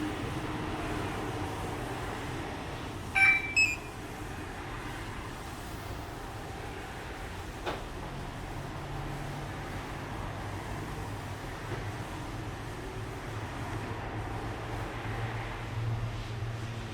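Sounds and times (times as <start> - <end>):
quick electronic beeps: 3.2 - 4.0.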